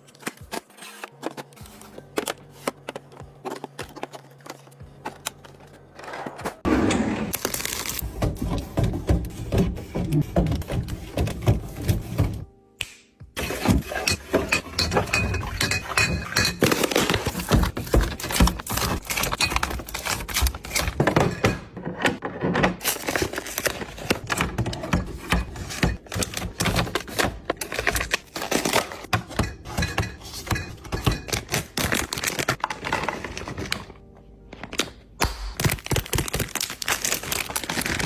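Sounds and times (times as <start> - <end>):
kitchen containers clattering: 13.4 - 34.0.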